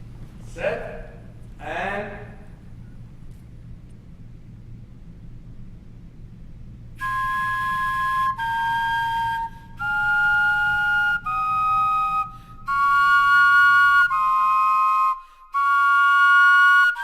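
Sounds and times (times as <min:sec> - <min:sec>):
vegetable flutes playing melody: 0:07.0 - 0:17.0.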